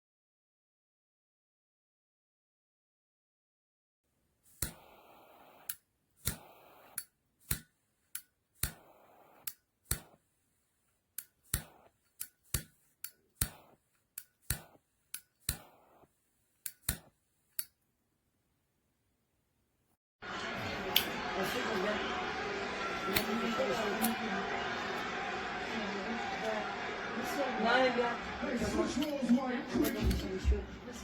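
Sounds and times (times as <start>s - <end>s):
gas hissing: 4.6s - 7.6s.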